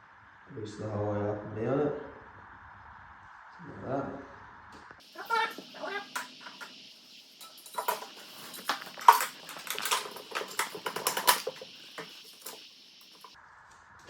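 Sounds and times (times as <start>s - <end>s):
small metal parts clinking: 5.2s - 13.4s.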